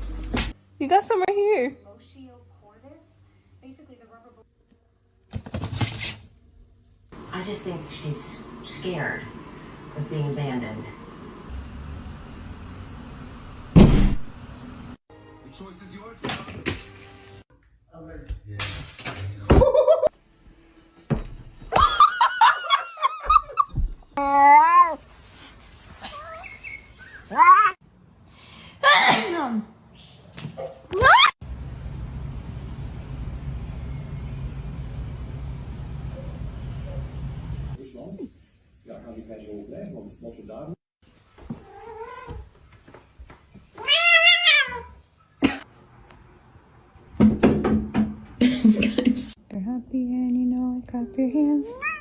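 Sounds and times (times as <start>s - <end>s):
cat meowing: 41.6s - 42.4s, 43.8s - 45.0s, 51.7s - 52.0s.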